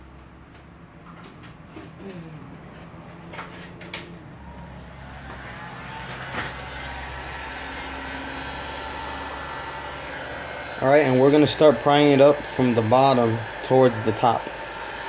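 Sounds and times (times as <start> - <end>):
hot-air blower running: 1.8 - 15.0.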